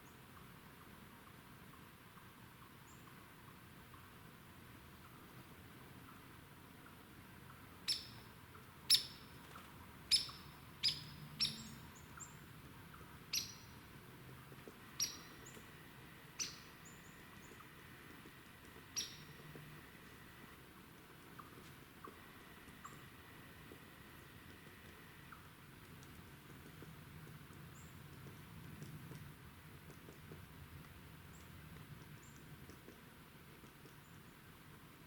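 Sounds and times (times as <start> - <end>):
bird chip calls: 7.8 - 8.3, 8.9 - 13.9, 14.8 - 20.5, 21.3 - 25.5.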